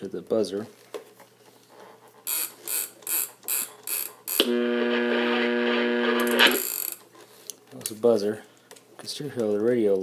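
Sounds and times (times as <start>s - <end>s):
alarm clock buzzer: 2.3s - 7.0s.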